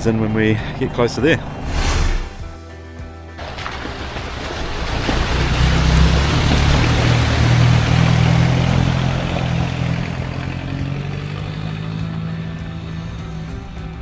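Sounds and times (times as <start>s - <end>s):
vehicle driving past: 3.7s - 13.9s.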